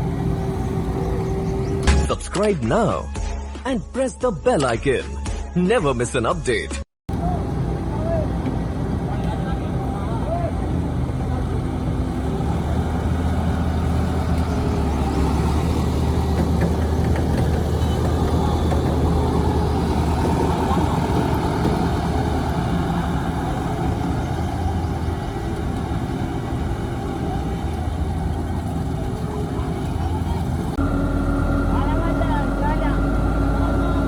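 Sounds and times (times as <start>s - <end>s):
heavy engine humming: 0.0s - 2.0s, 7.1s - 34.0s.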